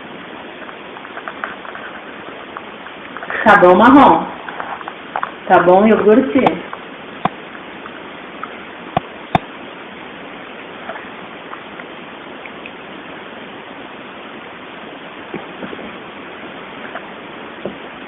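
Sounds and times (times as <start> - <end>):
steady background hiss: 0.0 - 18.0.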